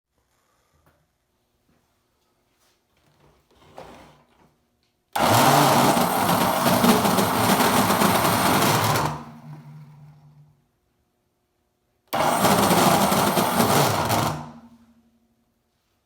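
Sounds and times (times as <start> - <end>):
vacuum cleaner motor running: 5.2 - 10.1, 12.1 - 14.9.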